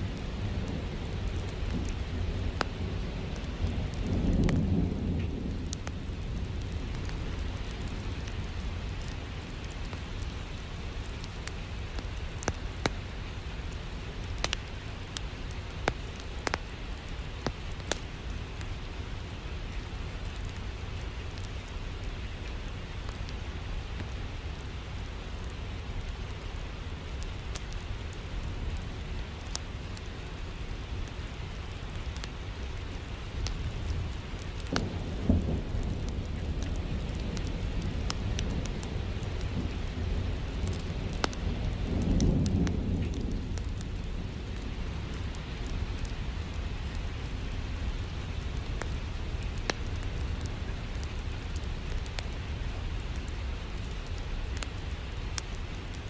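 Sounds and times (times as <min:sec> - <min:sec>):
steady rain: 0:00.0 - 0:56.0
thunder rumbling: 0:00.2 - 0:09.1, 0:33.6 - 0:50.6
sharp crackles: 0:01.1 - 0:56.0.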